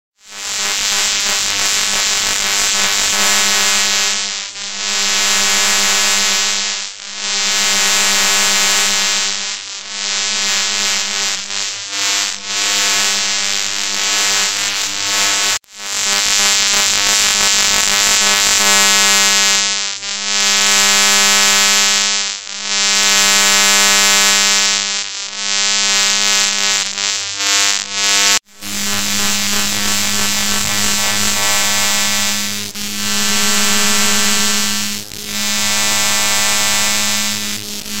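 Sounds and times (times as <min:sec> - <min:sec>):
harsh electric buzz: 0:00.2 - 0:38.0.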